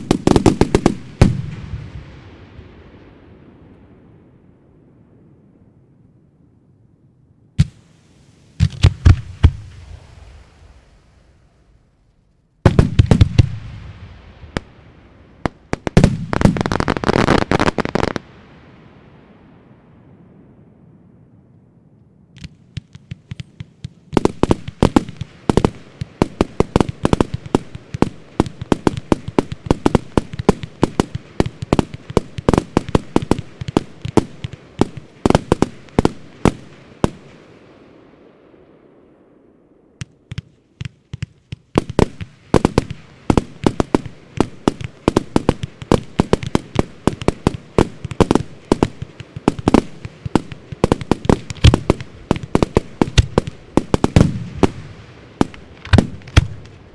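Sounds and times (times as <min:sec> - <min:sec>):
fireworks launches and bursts: 0:00.0 - 0:03.7, 0:07.6 - 0:12.0, 0:12.6 - 0:19.2, 0:22.4 - 0:38.0, 0:39.9 - 0:56.9
fireworks hiss: 0:07.6 - 0:11.7.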